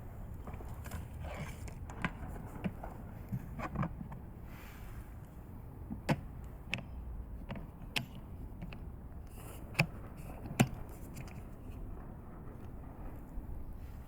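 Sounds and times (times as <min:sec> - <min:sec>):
sharp clicks and knocks: 0:05.9 - 0:13.4
steady low rumble: 0:09.9 - 0:14.0.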